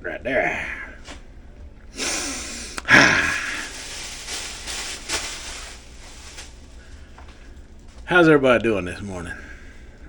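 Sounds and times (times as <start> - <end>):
rustling: 3.4 - 8.0.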